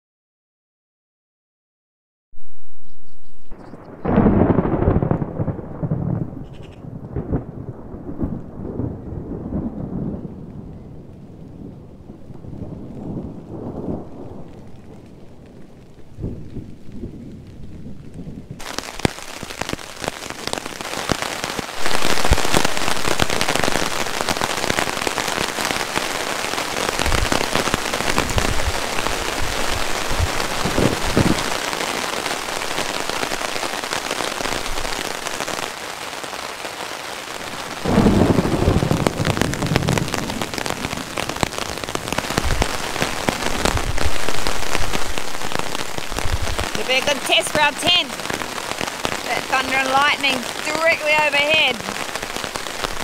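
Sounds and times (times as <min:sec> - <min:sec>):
low thunder rumbling: 0:03.5 - 0:35.8, 0:37.3 - 0:53.0
heavy rain hissing: 0:17.8 - 0:53.0.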